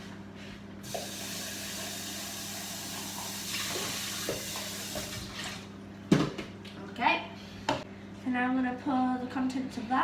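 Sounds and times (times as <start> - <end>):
tap running into a sink: 0.9 - 1.4, 2.7 - 6.4.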